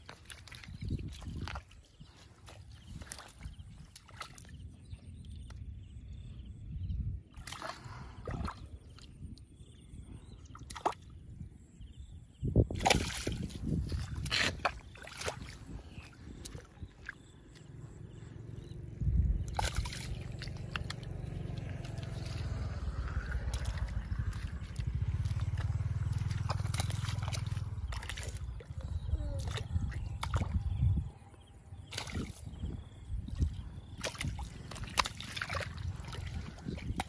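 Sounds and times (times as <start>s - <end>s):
muddy water sloshing: 0.0s - 6.5s, 7.2s - 37.0s
low rumble: 17.7s - 37.0s.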